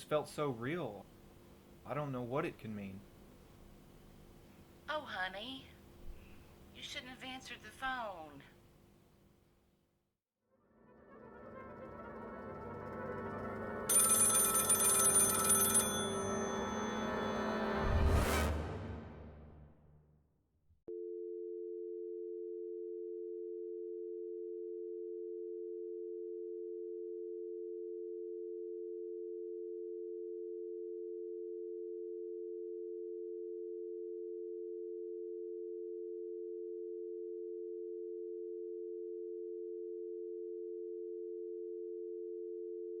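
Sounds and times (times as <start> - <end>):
telephone dial tone: 13.9 - 17.1, 20.9 - 43.0.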